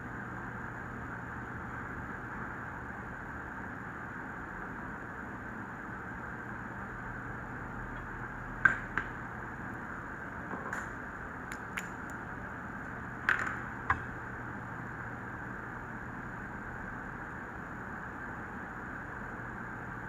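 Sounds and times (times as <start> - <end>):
clicks and taps of hard objects: 11.5 - 12.2.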